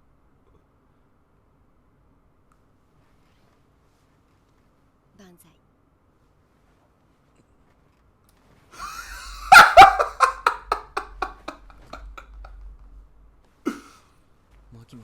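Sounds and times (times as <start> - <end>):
person laughing hard: 8.8 - 12.7.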